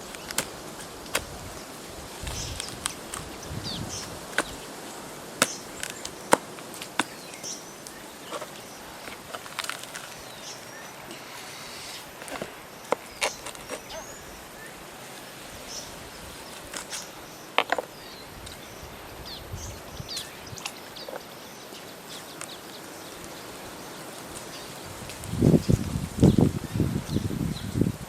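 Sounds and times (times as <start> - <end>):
steady background hiss: 0.0 - 28.0
bird chirps: 12.9 - 14.8.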